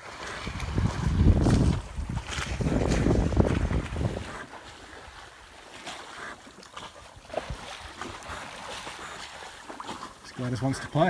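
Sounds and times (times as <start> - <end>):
wind on microphone: 0.0 - 5.2
faint splashes: 0.0 - 11.0
water lapping against hull: 0.0 - 11.0.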